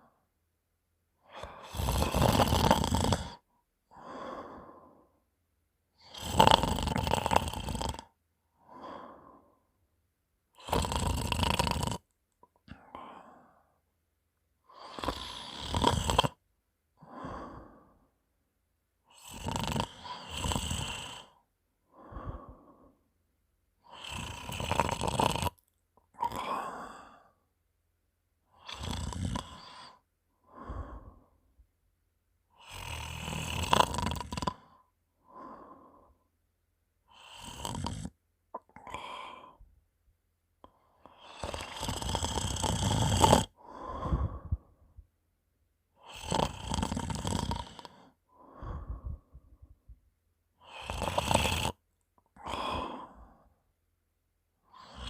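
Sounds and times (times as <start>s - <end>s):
person snoring wetly: 1.3s - 3.4s, 6.0s - 9.5s, 10.6s - 12.1s, 14.7s - 16.4s, 19.1s - 21.4s, 23.8s - 27.3s, 28.6s - 31.3s, 32.6s - 36.1s, 37.1s - 39.6s, 41.0s - 44.7s, 46.0s - 49.4s, 50.6s - 51.8s, 52.4s - 53.4s, 54.7s - 55.0s.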